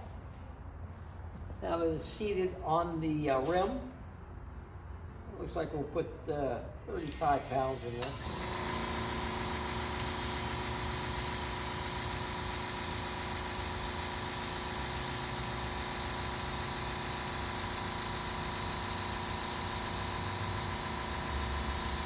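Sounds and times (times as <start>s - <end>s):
air compressor humming: 3.4s - 4.0s, 6.9s - 22.0s.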